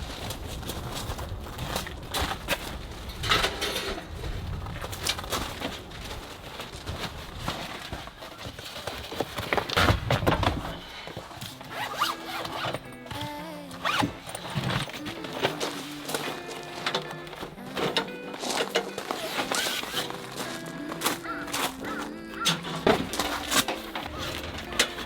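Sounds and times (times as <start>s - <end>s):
zipper rasping: 6.6s - 13.2s, 13.8s - 25.0s
soft background music: 10.8s - 25.0s.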